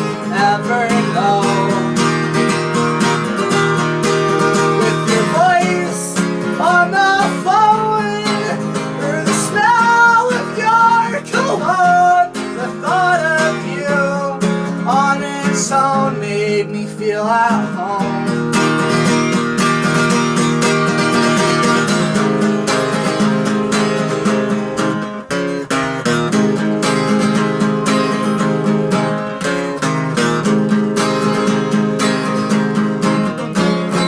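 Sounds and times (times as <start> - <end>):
person singing: 0.0 - 2.4, 3.6 - 18.6
acoustic guitar strumming: 0.0 - 34.0.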